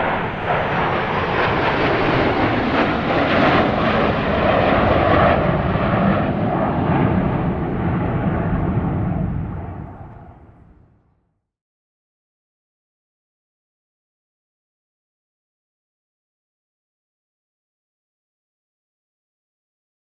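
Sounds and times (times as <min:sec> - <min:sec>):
jet engine roar flying past: 0:00.0 - 0:11.1.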